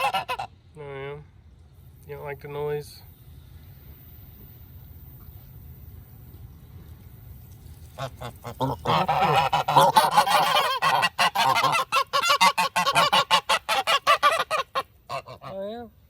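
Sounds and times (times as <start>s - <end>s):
geese honking: 0.0s - 0.6s, 8.0s - 15.8s.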